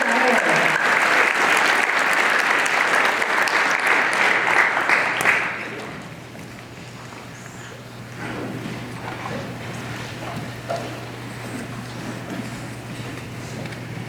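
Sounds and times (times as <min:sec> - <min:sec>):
audience applauding: 0:00.0 - 0:06.2.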